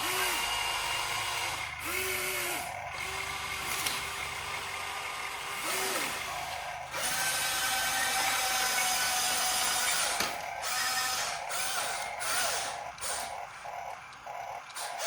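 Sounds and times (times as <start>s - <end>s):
small electric motors whining: 0.0s - 15.0s.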